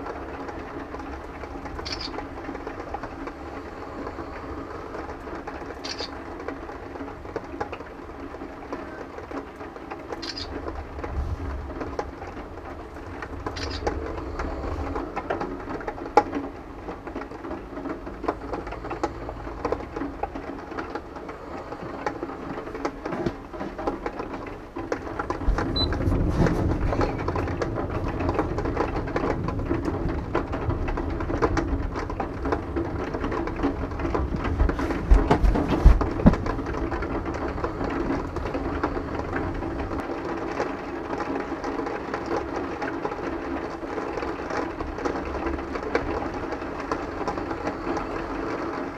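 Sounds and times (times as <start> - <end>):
rain pattering: 0.0 - 48.9
thunder rumbling: 10.5 - 40.1.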